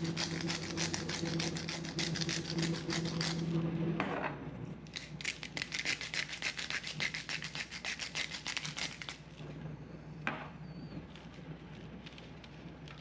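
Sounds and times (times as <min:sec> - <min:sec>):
rapid rhythmic scraping: 0:00.0 - 0:03.8, 0:04.9 - 0:09.2.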